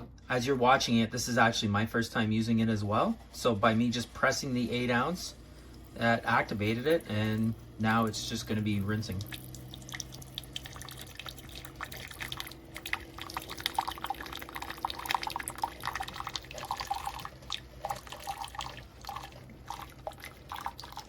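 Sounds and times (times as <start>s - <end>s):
coffee maker low hum: 0.0s - 21.0s
water streaming into a cup: 3.8s - 21.0s.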